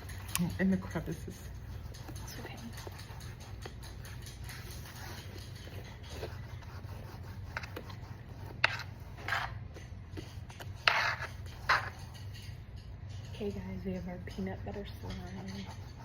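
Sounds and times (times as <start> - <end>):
slime rubbing and scraping: 0.0 - 12.5.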